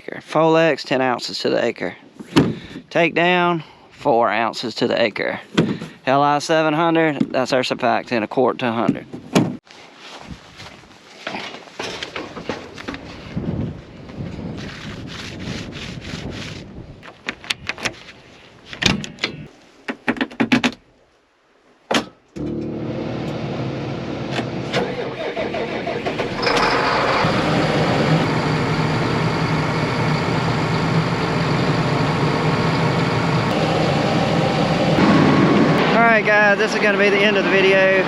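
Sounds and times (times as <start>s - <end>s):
vehicle engine running: 22.4s - 24.8s, 25.6s - 38.0s.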